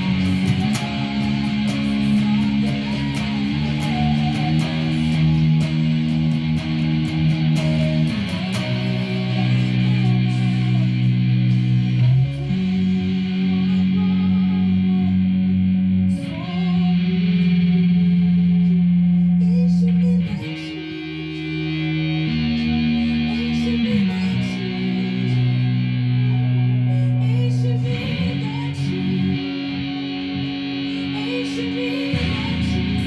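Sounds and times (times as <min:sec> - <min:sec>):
electric guitar held chords: 0:00.0 - 0:33.0.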